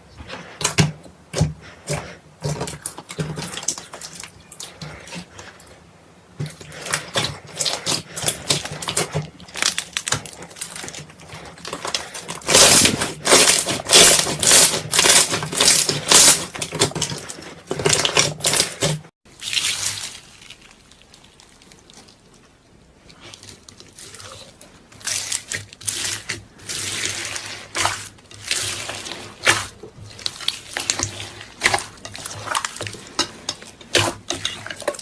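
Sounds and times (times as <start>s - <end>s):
slime crackling and popping: 6.8s - 17.2s, 19.3s - 35.0s.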